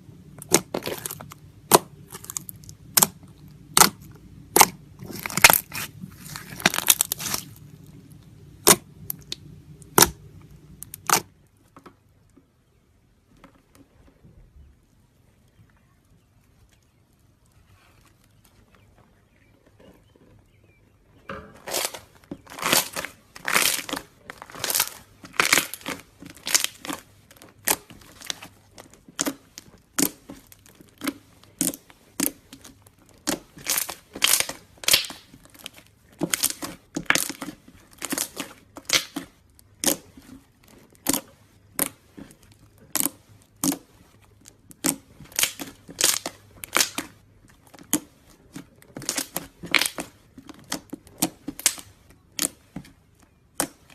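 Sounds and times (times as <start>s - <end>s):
slime squished by hand crackling: 0.0s - 11.4s, 21.6s - 53.9s.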